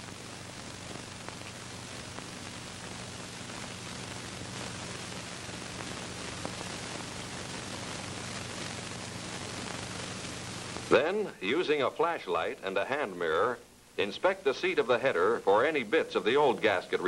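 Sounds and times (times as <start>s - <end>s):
steady hiss: 0.0s - 17.0s
faint clicks: 1.2s - 2.3s.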